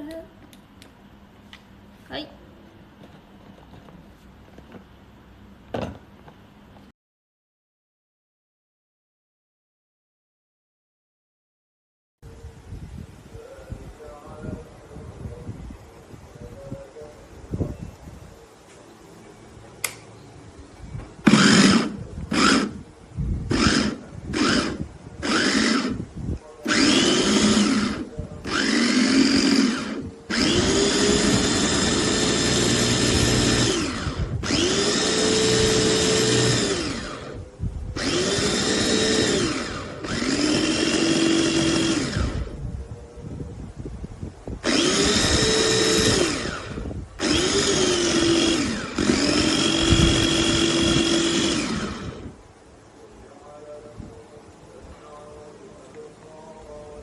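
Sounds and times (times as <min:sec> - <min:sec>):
electric food chopper motor: 0:21.2 - 0:22.8, 0:23.5 - 0:26.0, 0:26.7 - 0:37.4, 0:38.0 - 0:42.6, 0:44.6 - 0:52.3.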